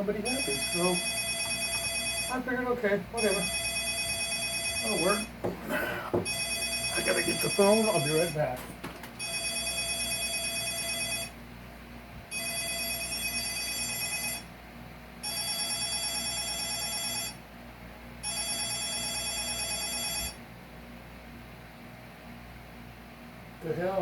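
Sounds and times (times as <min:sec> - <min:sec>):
electronic telephone ringing: 0:00.3 - 0:02.4, 0:03.2 - 0:05.3, 0:06.3 - 0:08.4, 0:09.2 - 0:11.4, 0:12.3 - 0:14.5, 0:15.2 - 0:17.4, 0:18.2 - 0:20.4.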